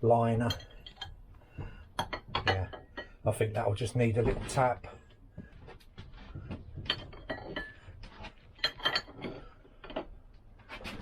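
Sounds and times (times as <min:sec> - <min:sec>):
metal tools clinking and clattering: 0:00.3 - 0:01.2, 0:02.0 - 0:03.2, 0:06.8 - 0:11.0.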